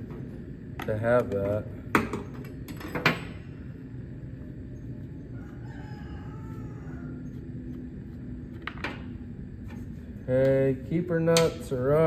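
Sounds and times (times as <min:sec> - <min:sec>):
rooster crowing: 0:05.2 - 0:07.7.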